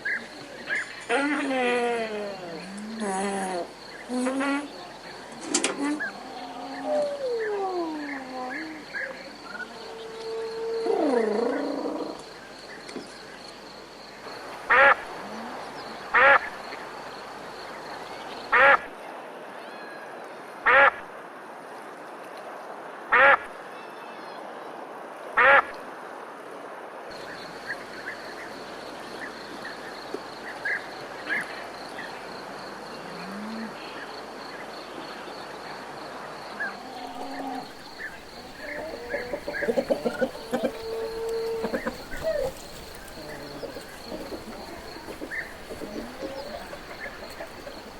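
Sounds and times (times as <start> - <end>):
faint chirps: 36.4 - 47.9.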